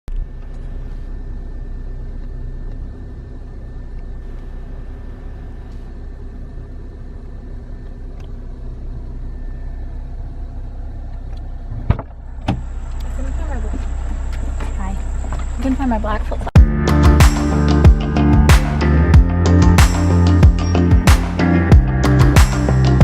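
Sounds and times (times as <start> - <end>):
car engine rumble: 0.0 - 23.0.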